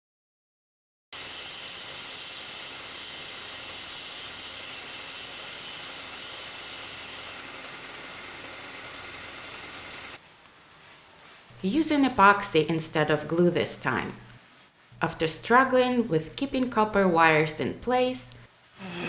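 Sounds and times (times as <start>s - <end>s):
power tool whirring: 1.2s - 10.2s.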